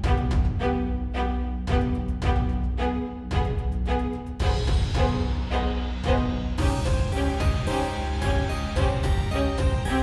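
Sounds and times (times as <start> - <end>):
harpsichord-like melody with bass: 5.2 - 10.0.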